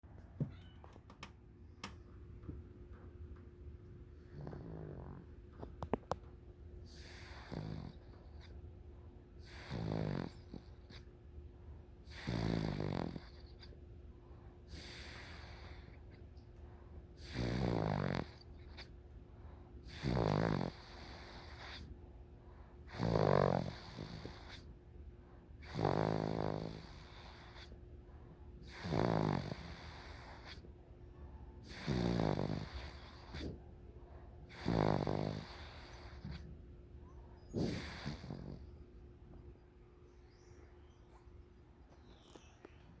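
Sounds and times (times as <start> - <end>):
quiet breathing: 4.0 - 22.9, 26.6 - 43.0
person snoring: 4.3 - 5.2, 6.9 - 8.0, 9.4 - 10.6, 12.1 - 13.4, 17.2 - 18.9, 19.9 - 21.8, 22.9 - 24.6, 25.6 - 27.7, 28.7 - 30.6, 31.6 - 33.5, 34.5 - 36.4, 37.5 - 38.7.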